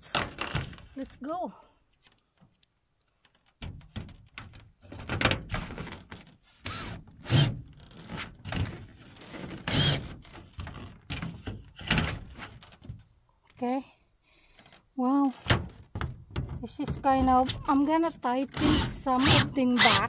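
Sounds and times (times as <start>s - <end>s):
thumps on roof panels: 15.4s - 19.4s.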